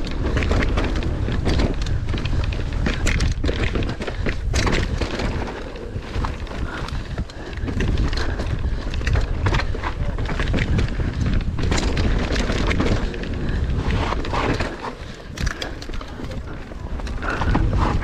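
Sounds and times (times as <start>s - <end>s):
bike rattling and knocking: 0.0s - 18.0s
wind buffeting microphone: 0.0s - 18.0s
tyres on dirt: 11.8s - 18.0s.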